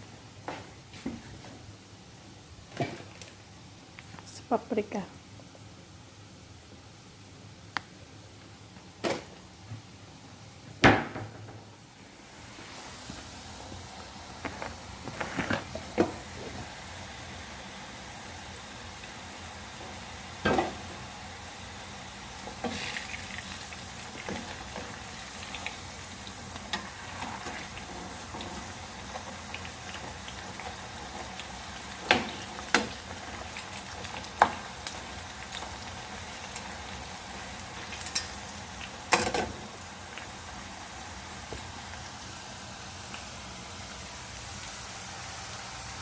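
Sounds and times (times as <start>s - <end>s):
potatoes sizzling in hot oil: 12.3s - 46.0s.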